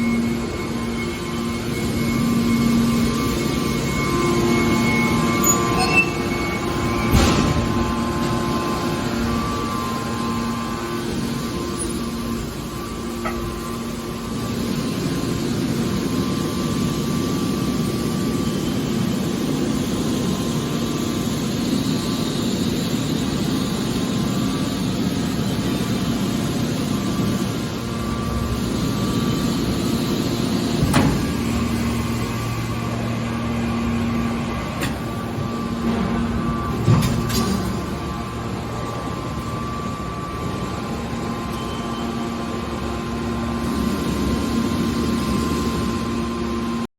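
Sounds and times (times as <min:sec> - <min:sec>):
baler machine hum: 0:00.0 - 0:46.8.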